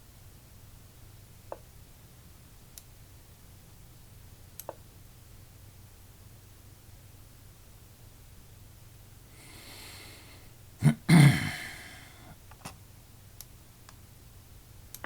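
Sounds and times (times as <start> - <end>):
faint clicks: 4.6 - 4.8
sharp bursts of breath: 9.4 - 12.3
person breathing in: 9.4 - 12.4.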